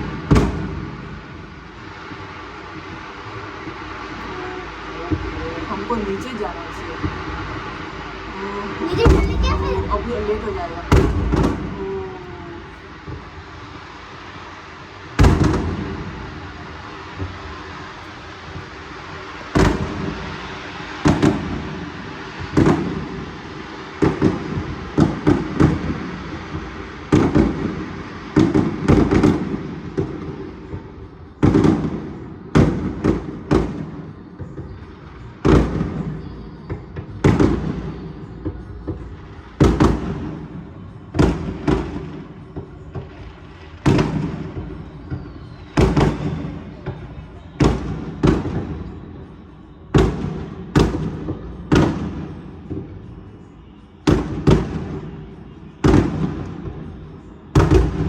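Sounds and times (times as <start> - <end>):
fireworks bangs with echo: 0.0 - 58.0.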